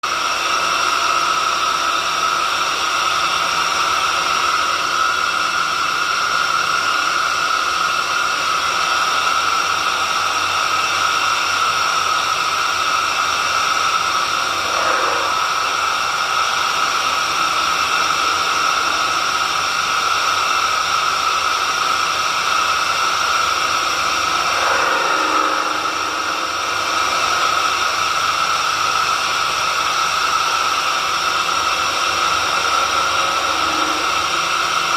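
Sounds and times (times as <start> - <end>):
drilling machine motor whining: 12.7 - 34.9.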